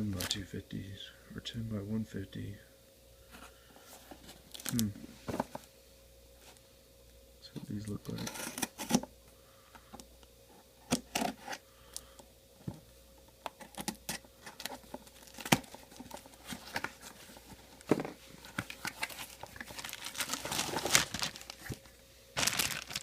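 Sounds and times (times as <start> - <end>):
packaging rustling and crinkling: 0.1 - 0.4, 4.0 - 5.7, 13.6 - 23.0.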